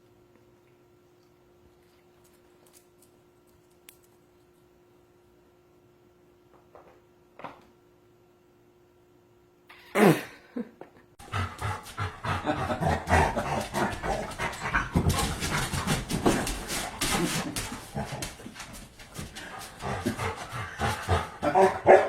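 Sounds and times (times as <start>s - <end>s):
dog panting: 11.2s - 22.0s.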